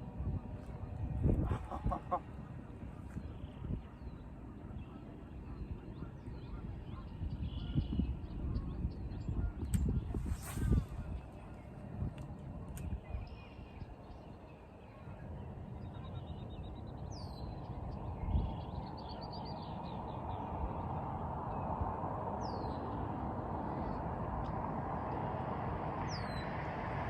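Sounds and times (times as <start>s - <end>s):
low rush of outdoor noise: 0.0s - 27.0s
birds calling: 1.1s - 11.9s.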